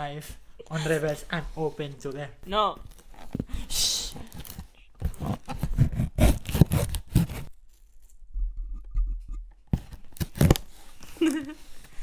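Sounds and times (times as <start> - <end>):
packing tape tearing: 2.8 - 8.0, 9.8 - 11.9
knife cutting cardboard box: 3.2 - 7.6, 9.7 - 11.8.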